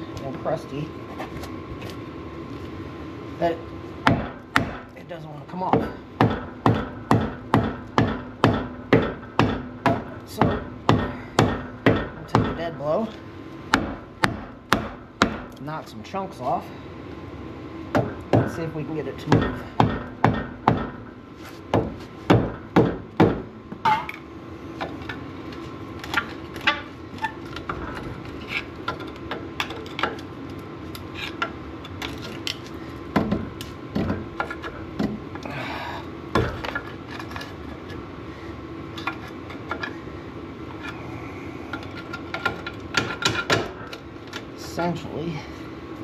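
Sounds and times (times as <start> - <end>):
hammer striking metal: 5.7 - 12.6.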